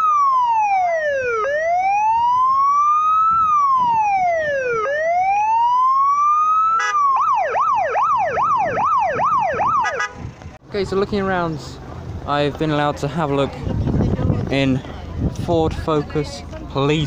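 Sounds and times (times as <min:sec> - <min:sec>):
police siren fast yelp: 0:00.0 - 0:10.1
police siren wailing: 0:00.0 - 0:10.3.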